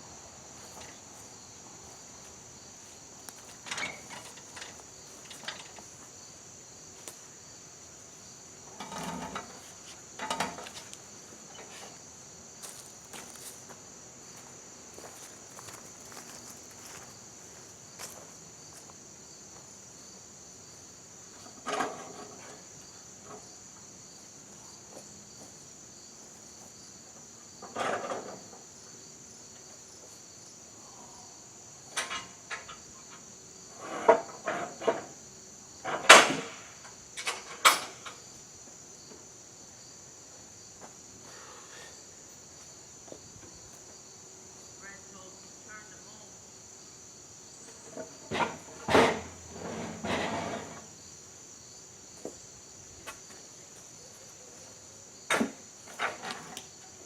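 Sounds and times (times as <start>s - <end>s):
crickets chirring: 0.0s - 57.0s
tools and parts clattering: 3.4s - 6.0s, 8.8s - 9.6s.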